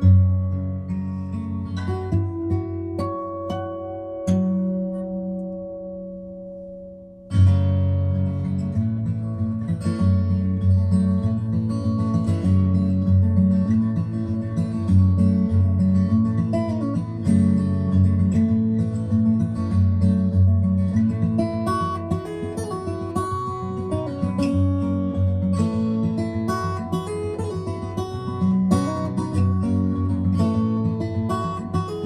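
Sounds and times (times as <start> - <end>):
plucked guitar music: 0.0 - 32.0.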